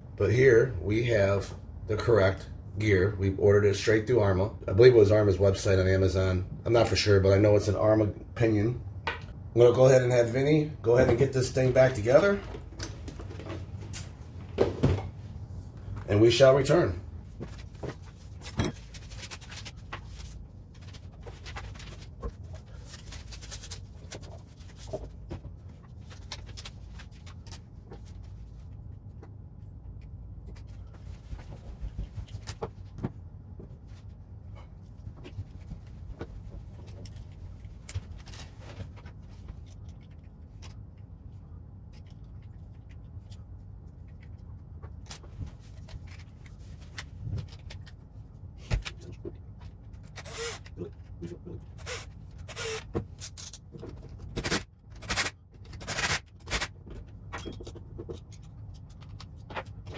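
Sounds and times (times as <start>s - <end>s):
steady low hum: 0.0s - 59.9s
small clicks and taps of parts: 56.9s - 59.9s.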